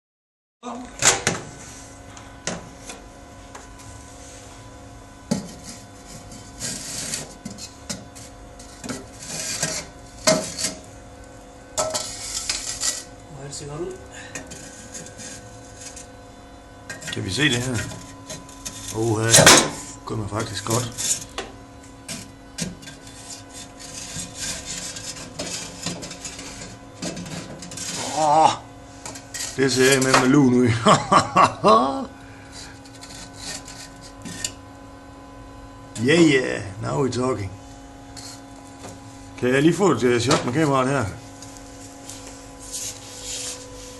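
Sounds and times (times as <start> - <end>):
microwave oven humming: 0.6 - 43.9
rubbing and scraping: 5.3 - 10.9, 11.8 - 13.2, 14.5 - 16.2, 16.9 - 21.4, 22.0 - 28.2, 29.0 - 30.3, 32.5 - 34.6, 38.1 - 39.3, 41.6 - 43.9.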